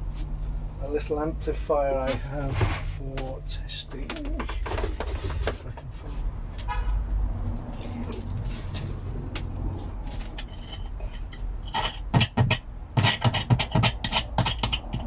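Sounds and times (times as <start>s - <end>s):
low amplifier hum: 0.0s - 6.4s.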